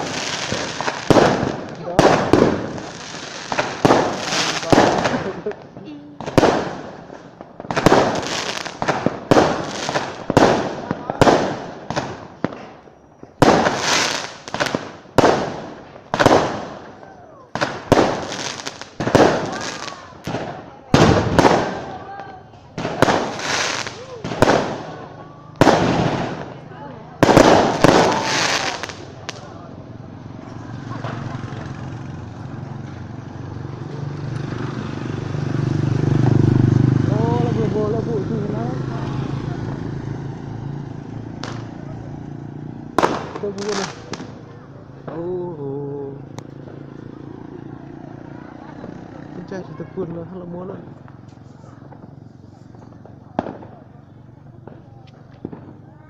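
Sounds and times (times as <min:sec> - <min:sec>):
fireworks banging with crackling hiss: 0:00.0 - 0:34.8, 0:40.8 - 0:45.4, 0:48.6 - 0:56.0.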